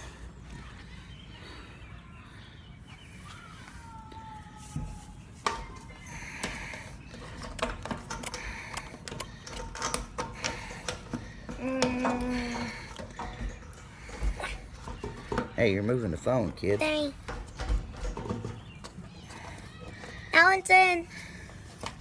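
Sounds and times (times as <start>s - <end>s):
light clicks and clinks of parts: 5.4s - 15.7s.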